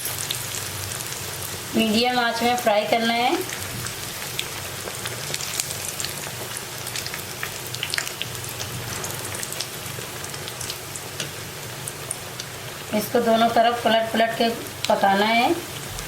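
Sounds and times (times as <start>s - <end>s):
bread deep-frying in oil: 0.0s - 16.0s.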